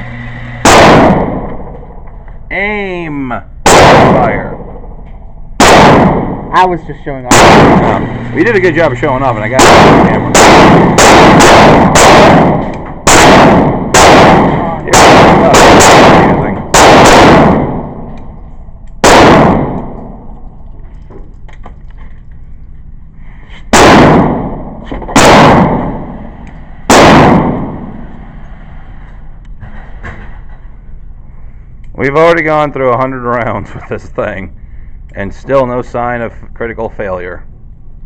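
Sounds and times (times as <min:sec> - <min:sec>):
gunshots with ringing echo: 0:00.6 - 0:02.0, 0:03.6 - 0:08.1, 0:09.4 - 0:18.4, 0:19.0 - 0:20.3, 0:23.7 - 0:28.1.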